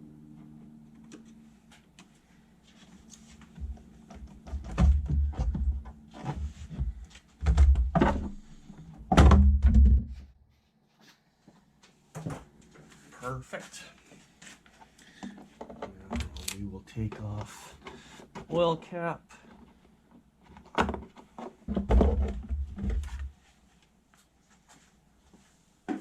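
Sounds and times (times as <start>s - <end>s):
plastic duct knocking and rubbing: 3.5s - 10.3s, 20.5s - 23.4s.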